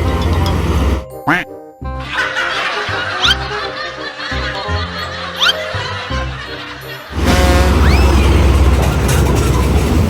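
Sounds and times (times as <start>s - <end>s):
music: 0.0s - 10.0s
vehicle engine rumble: 7.1s - 10.0s.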